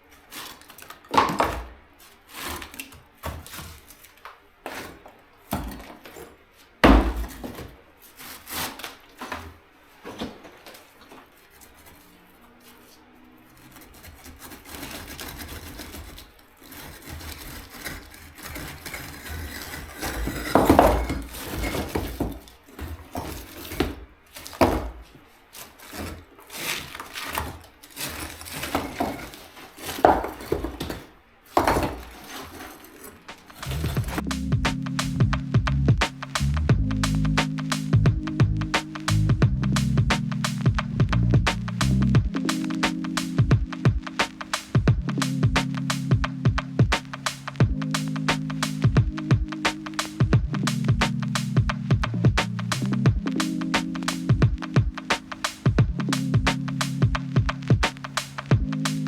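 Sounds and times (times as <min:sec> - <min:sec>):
bricks knocking and clattering: 0:00.6 - 0:01.8, 0:04.7 - 0:07.8, 0:14.0 - 0:25.1, 0:25.7 - 0:34.2.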